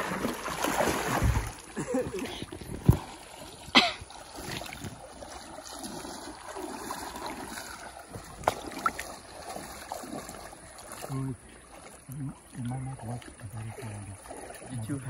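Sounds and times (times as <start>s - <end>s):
river water running: 0.0s - 15.0s.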